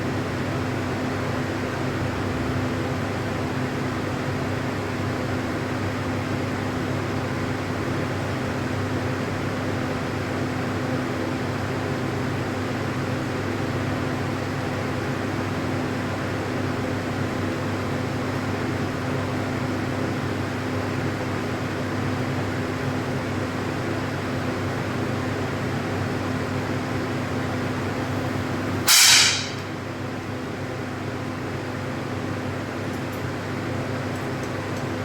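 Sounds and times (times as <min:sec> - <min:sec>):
steady mechanical hum: 0:00.0 - 0:35.0
air pistol shot: 0:28.9 - 0:29.7.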